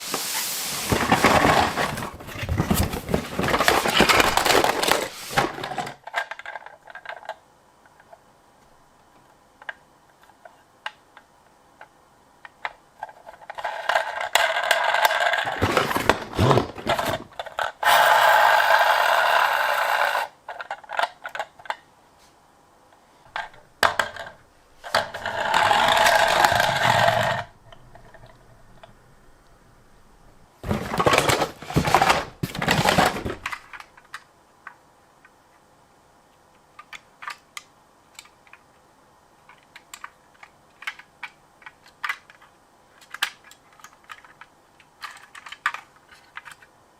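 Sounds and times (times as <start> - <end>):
toy cars clattering and scraping: 0.1 - 8.2, 12.6 - 21.8, 23.3 - 28.9, 30.6 - 34.3, 39.4 - 46.7.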